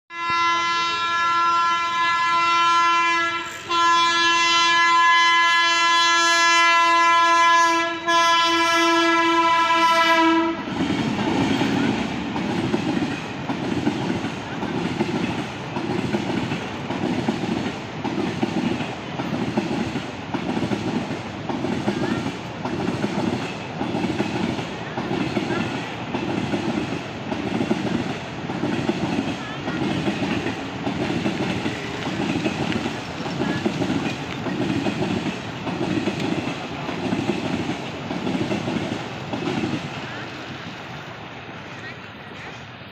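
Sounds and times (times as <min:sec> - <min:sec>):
locomotive horn blast: 0:00.1 - 0:10.8
train wheels clattering over rails: 0:09.0 - 0:42.6.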